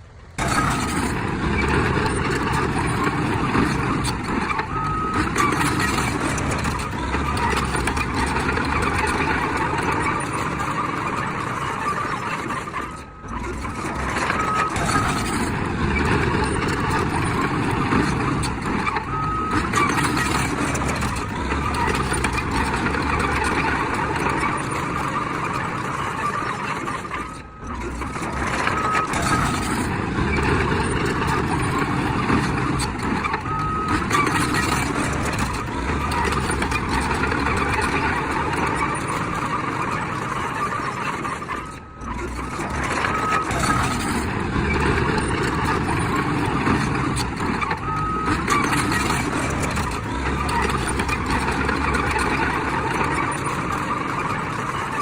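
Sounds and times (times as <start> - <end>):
diesel earthmoving machinery running: 0.0 - 55.0
reversing beeps: 1.8 - 11.2, 12.0 - 55.0.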